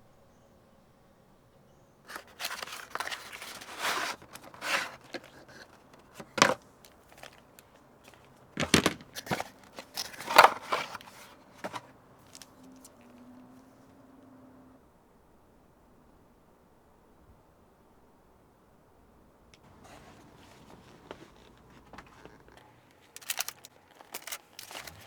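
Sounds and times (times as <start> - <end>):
handling knocks and rustles: 2.1 - 13.1, 19.6 - 25.0.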